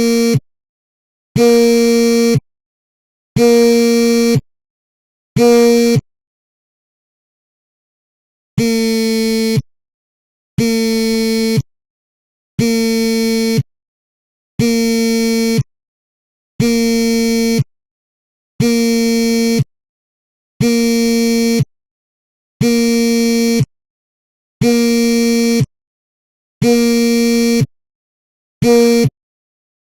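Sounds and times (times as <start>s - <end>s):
mobile phone vibrating on a table: 0.0s - 0.5s, 1.4s - 2.5s, 3.4s - 4.5s, 5.4s - 6.0s, 8.6s - 9.7s, 10.6s - 11.7s, 12.6s - 13.7s, 14.6s - 15.7s, 16.6s - 17.7s, 18.6s - 19.7s, 20.6s - 21.7s, 22.6s - 23.7s, 24.6s - 25.8s, 26.6s - 27.7s, 28.6s - 29.2s.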